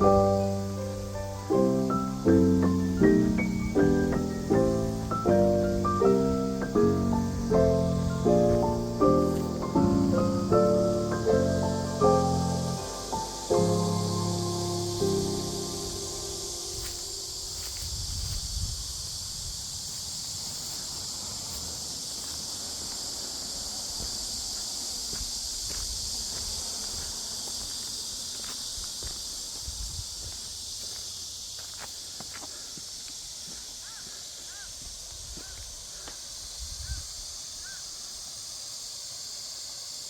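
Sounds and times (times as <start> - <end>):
insects chorus: 0.0 - 40.0
steady high hiss: 0.0 - 40.0
wind rumbling on microphone: 2.3 - 10.9, 15.8 - 21.8, 23.4 - 27.2, 28.7 - 30.5, 34.7 - 37.7
bird calling: 33.8 - 34.8, 37.6 - 37.9.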